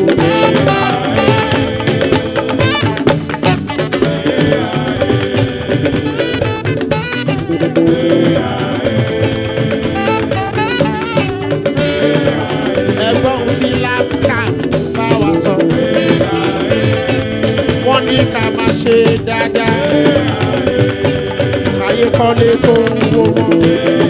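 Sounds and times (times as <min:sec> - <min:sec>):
wavering melodic lead: 0:00.0 - 0:23.6
percussion and drum groove: 0:00.0 - 0:24.0
person singing: 0:00.0 - 0:24.0.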